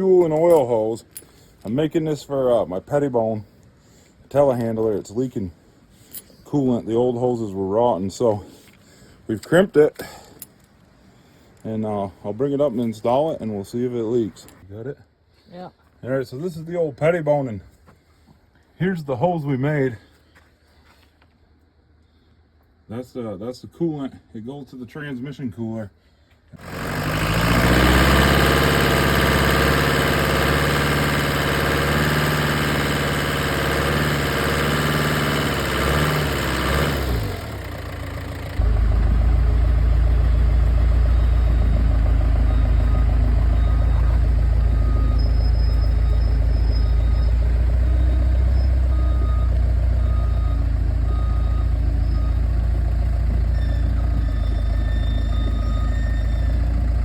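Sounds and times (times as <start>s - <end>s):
engine idling: 26.6s - 57.0s.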